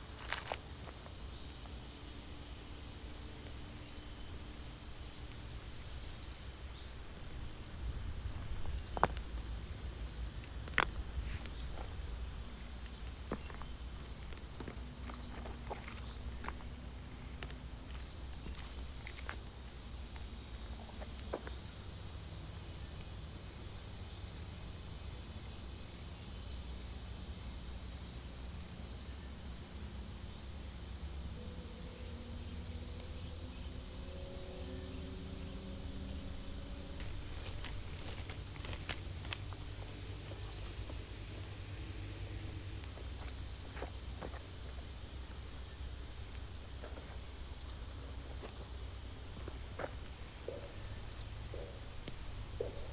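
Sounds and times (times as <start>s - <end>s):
low steady background noise: 0.0s - 52.9s
sharp clicks: 5.3s - 21.6s.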